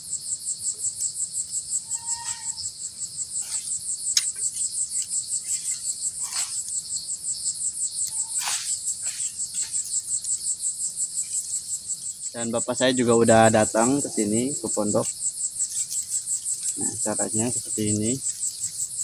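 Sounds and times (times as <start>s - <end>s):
insects chirring: 0.0s - 19.0s
faint knocks and scrapes: 5.4s - 6.8s.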